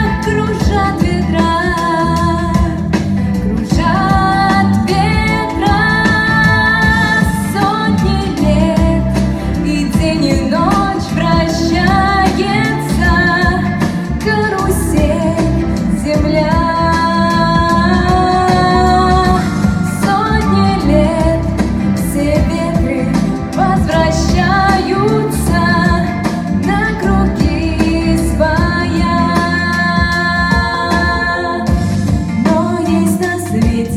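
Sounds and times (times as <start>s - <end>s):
instrumental accompaniment: 0.0s - 33.9s
woman singing: 0.0s - 33.9s.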